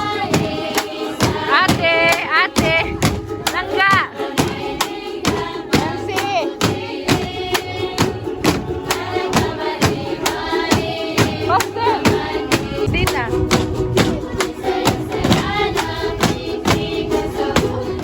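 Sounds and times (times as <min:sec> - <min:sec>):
group of voices singing: 0:00.0 - 0:18.0
steady percussive beat: 0:00.0 - 0:18.0.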